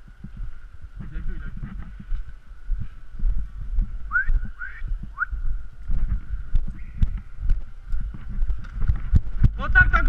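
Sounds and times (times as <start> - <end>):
low thumps and rumble: 0.0 - 10.0
rising whistle-like chirps: 4.1 - 5.4.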